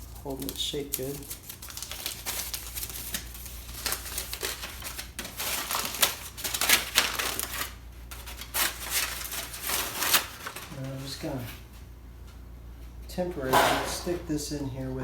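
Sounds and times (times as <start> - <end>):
steady low hum: 7.5 - 15.0.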